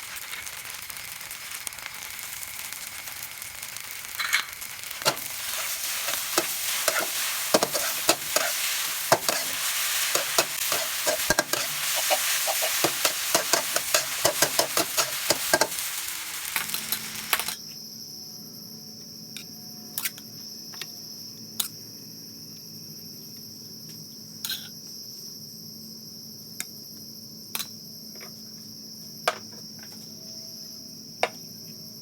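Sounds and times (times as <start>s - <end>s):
food sizzling in pan: 0.0s - 17.6s
crickets chirring: 0.4s - 32.0s
spatula clattering in pan: 5.0s - 16.0s.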